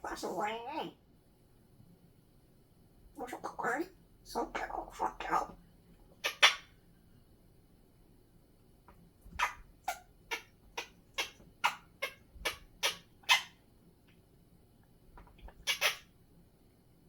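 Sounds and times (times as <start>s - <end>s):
parrot making sharp calls: 6.2s - 6.7s, 9.4s - 13.6s, 15.6s - 16.1s.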